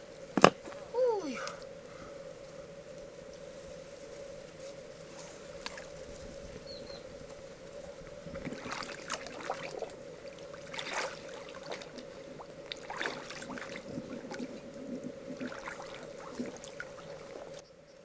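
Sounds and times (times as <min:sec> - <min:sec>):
faint hum: 0:00.0 - 0:18.0
water sloshing and splashing: 0:04.6 - 0:17.6.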